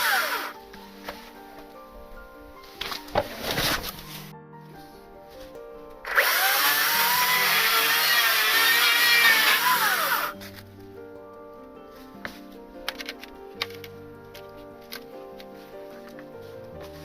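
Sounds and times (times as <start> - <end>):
power tool cutting wood: 0.0 - 0.5, 6.1 - 10.4
background music with steady pulse: 0.0 - 17.0.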